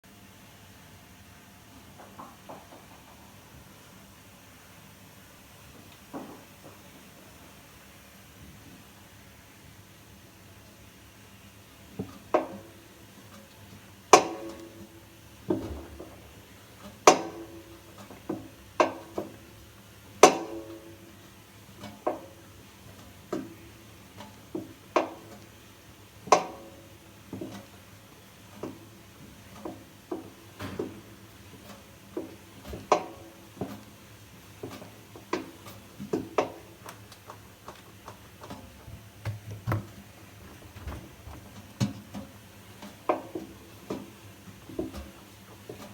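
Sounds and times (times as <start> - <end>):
washing machine drum knocking: 14.1 - 16.4, 17.0 - 19.5, 20.2 - 21.1, 29.4 - 33.8, 38.5 - 44.1.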